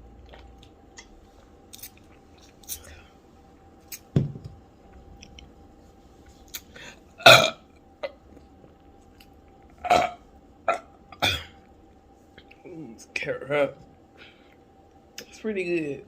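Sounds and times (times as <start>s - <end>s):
person burping loudly: 7.2s - 7.6s, 9.8s - 11.5s.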